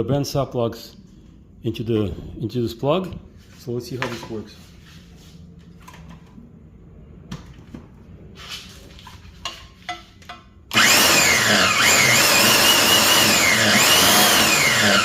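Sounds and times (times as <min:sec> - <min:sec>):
band saw cutting: 0:10.7 - 0:15.0.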